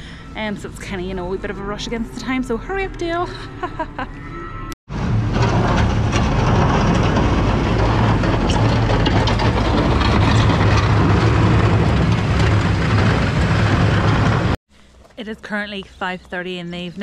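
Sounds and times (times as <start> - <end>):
tractor engine running: 4.9 - 14.6.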